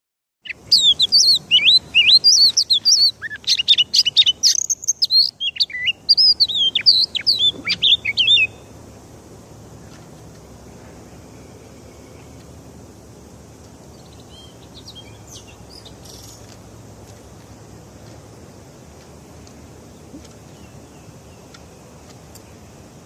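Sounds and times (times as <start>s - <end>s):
bird singing whistled phrases: 0.4s - 8.7s
faint steady hiss: 0.4s - 23.0s.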